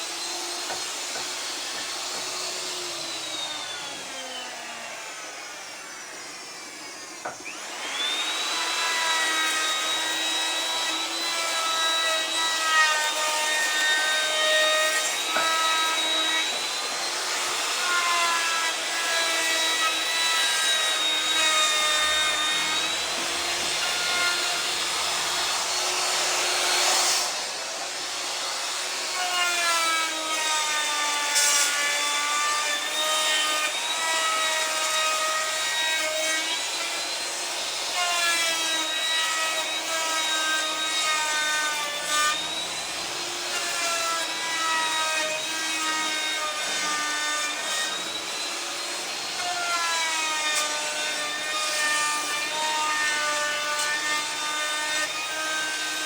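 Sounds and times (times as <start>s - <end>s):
power tool motor whining: 0.0s - 29.4s.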